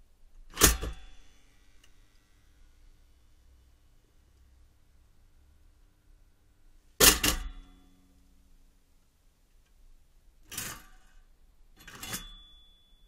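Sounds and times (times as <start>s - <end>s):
toaster springing up with metallic clack: 0.6s - 1.1s.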